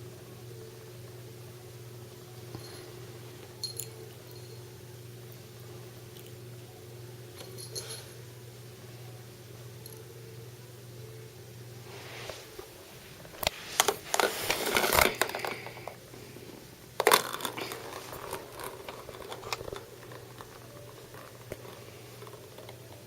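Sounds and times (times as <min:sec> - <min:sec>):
kitten playing with plastic toys: 0:13.3 - 0:16.0, 0:17.0 - 0:23.0.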